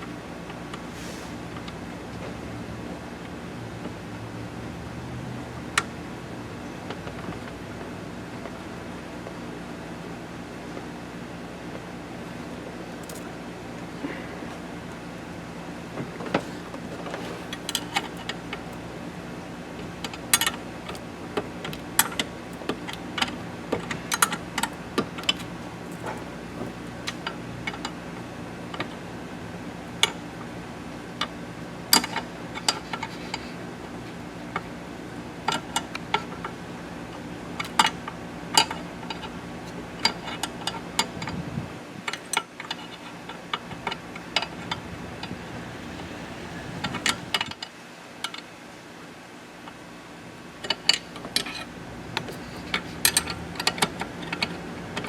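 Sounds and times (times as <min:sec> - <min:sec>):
steady low hum: 0:43.6 - 0:47.6.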